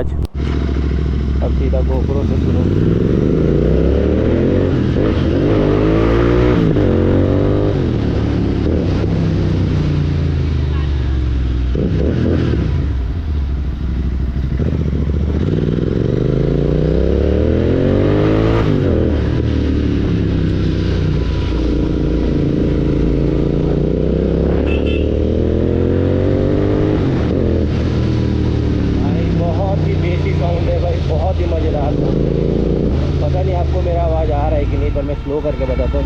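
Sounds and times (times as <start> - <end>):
motorcycle engine accelerating: 0.0 - 35.0.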